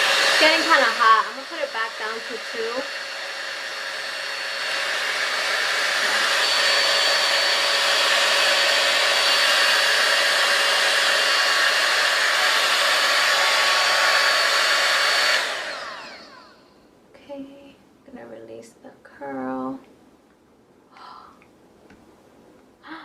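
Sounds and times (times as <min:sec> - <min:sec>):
hot air styler blowing: 0:00.0 - 0:16.8.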